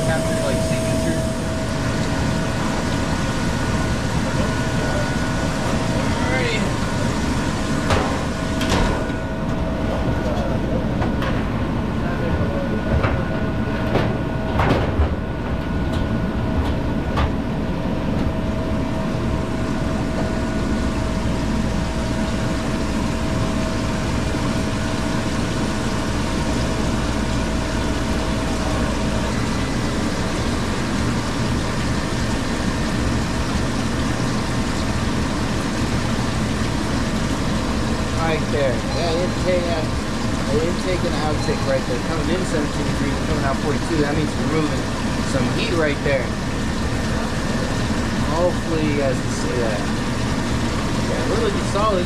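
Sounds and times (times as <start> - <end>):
steady tone: 0.0 - 7.4
ice machine humming: 0.0 - 52.0.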